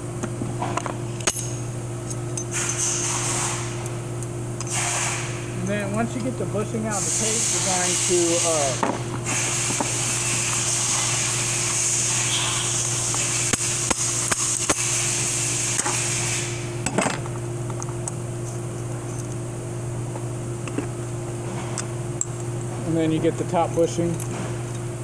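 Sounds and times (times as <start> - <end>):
steady hum: 0.0 - 25.0
hiss: 4.7 - 5.3, 7.0 - 13.5.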